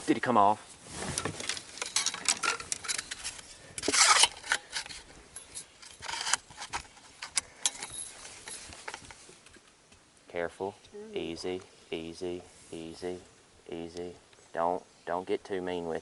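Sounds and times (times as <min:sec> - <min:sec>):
fishing gear clicks and rattles: 0:01.2 - 0:09.8.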